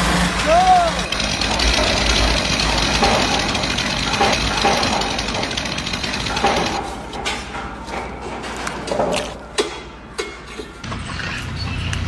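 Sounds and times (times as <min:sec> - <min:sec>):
power tool hammering: 0:00.0 - 0:07.6
knocks and clatter: 0:01.1 - 0:11.4.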